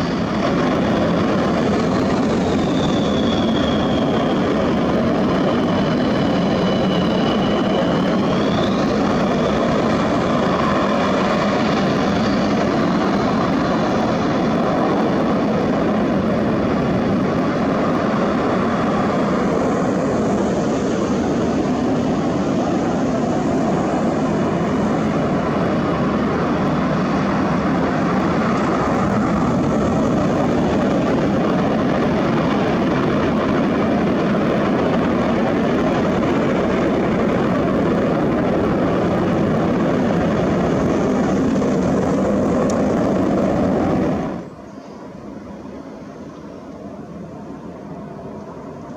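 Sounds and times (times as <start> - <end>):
high jet whistle: 0.0 - 13.5
loud jet engine noise: 0.0 - 48.9.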